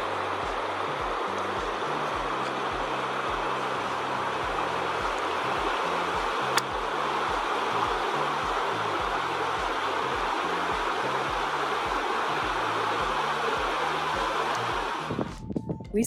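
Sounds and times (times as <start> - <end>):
creek water rushing: 0.0 - 15.3
background music with beat: 0.0 - 16.0
sharp click: 6.6 - 6.8.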